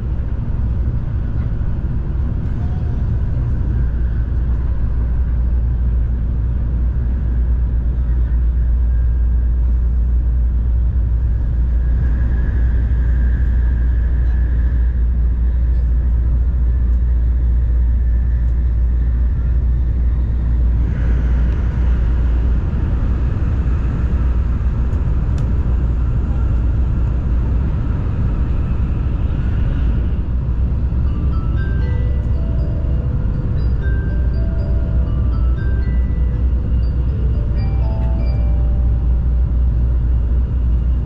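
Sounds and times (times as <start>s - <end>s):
deep rumble with hiss: 0.0s - 41.0s
train running noise in cabin: 0.0s - 41.0s.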